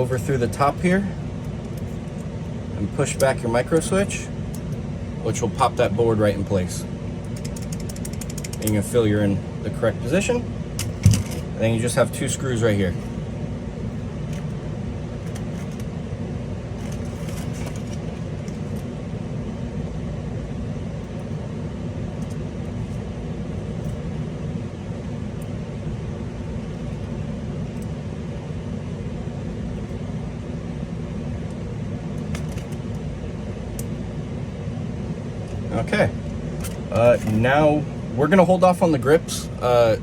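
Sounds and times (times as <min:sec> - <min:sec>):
low background hum: 0:00.0 - 0:40.0
small screws and tools clicking: 0:07.3 - 0:08.8.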